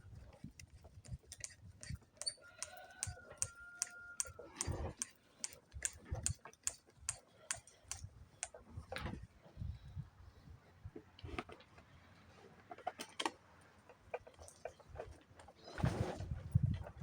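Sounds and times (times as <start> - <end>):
hand tools clicking and tapping: 0.2 - 8.6.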